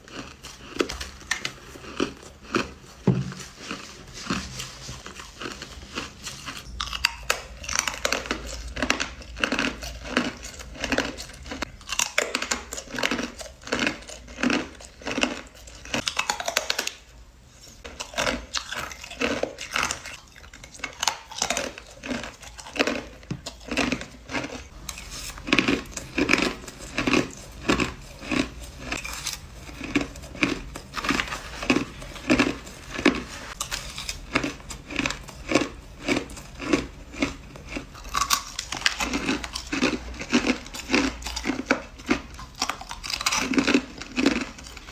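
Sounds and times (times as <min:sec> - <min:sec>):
person crunching ice: 0:00.0 - 0:17.0, 0:17.8 - 0:44.9.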